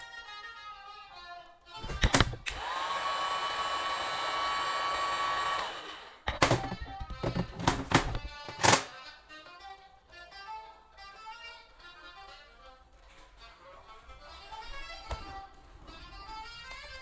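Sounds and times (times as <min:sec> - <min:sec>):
knocks and clicks: 0:01.8 - 0:02.6, 0:06.3 - 0:08.9
small electric motor whining: 0:01.9 - 0:06.3.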